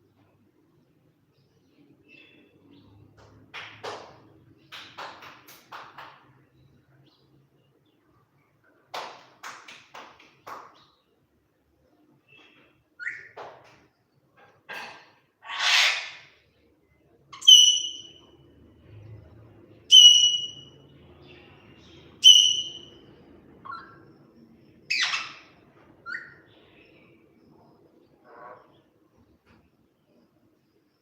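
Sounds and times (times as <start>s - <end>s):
parrot chirps and screeches: 13.0s - 13.4s, 14.8s - 16.4s, 17.4s - 18.2s, 19.9s - 20.7s, 22.2s - 22.9s, 24.9s - 26.4s
parrot whistled calls: 17.4s - 18.2s, 19.9s - 20.8s, 22.2s - 23.0s, 24.9s - 26.4s.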